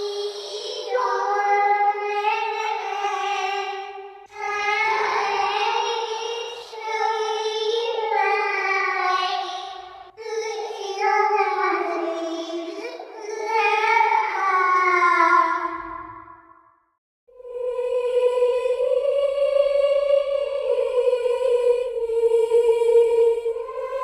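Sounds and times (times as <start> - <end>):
high child-like voice singing: 0.0 - 15.8.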